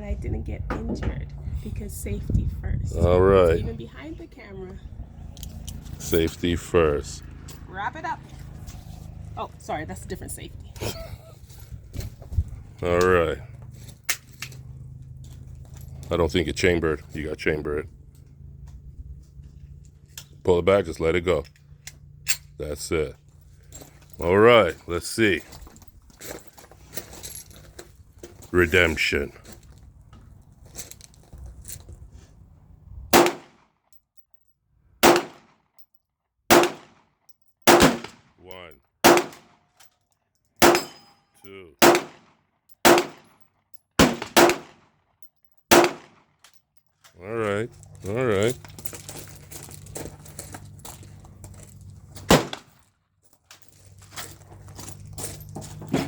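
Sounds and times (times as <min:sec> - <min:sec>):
pistol shots: 0:33.1 - 0:33.6, 0:35.0 - 0:35.5, 0:36.5 - 0:37.0, 0:37.7 - 0:38.2, 0:39.0 - 0:39.5, 0:40.6 - 0:41.0, 0:41.8 - 0:43.3, 0:44.0 - 0:44.8, 0:45.7 - 0:46.2, 0:52.3 - 0:52.7.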